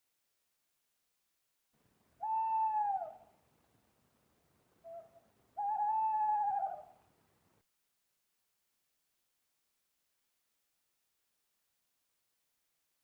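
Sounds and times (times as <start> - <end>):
owl hooting: 2.2 - 3.3, 4.8 - 7.0.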